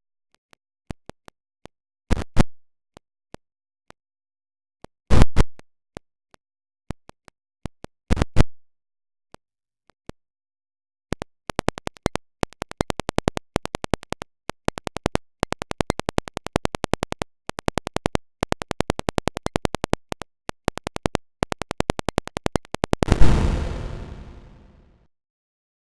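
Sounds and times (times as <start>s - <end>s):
rapid rhythmic clicks: 11.5s - 23.2s
short loud bursts: 23.1s - 24.8s
stutter-edited alarm remix: 23.1s - 24.8s.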